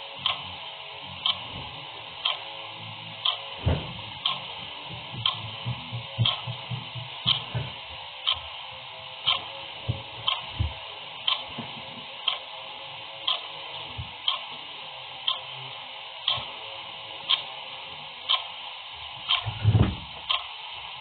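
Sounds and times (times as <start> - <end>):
clock ticking: 0.2 - 0.5, 1.2 - 1.4, 2.2 - 2.5, 3.2 - 3.6, 4.2 - 7.5, 8.2 - 8.5, 9.2 - 9.5, 10.2 - 10.5, 11.3 - 11.5, 12.2 - 12.5, 13.2 - 13.5, 14.2 - 14.6, 15.3 - 15.6, 16.2 - 16.5, 17.3 - 17.5, 18.3 - 18.5, 19.2 - 19.6, 20.2 - 20.6.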